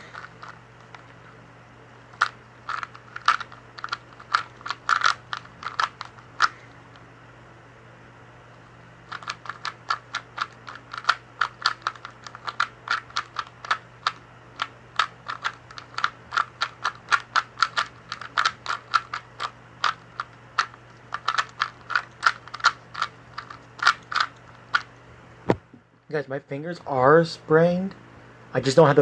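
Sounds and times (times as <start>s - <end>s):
puzzle cube clicking: 2.2s - 6.6s, 9.1s - 24.9s.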